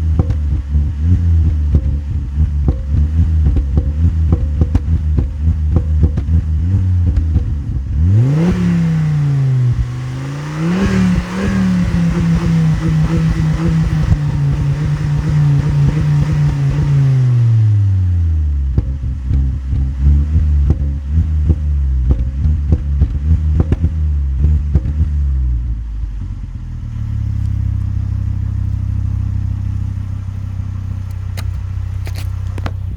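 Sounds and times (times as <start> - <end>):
car engine idling: 0.0 - 32.9
car engine revving: 0.0 - 32.9
exhaust crackles and pops: 0.0 - 32.9.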